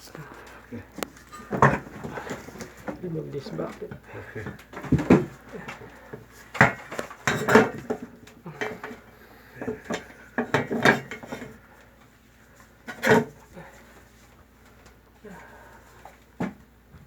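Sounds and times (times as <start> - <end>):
metal tools clinking and clattering: 1.1 - 3.0.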